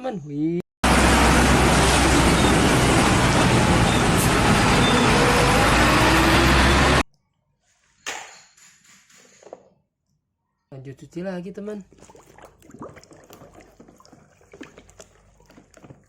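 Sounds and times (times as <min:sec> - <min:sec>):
heavy truck engine rumbling: 0:00.8 - 0:07.0.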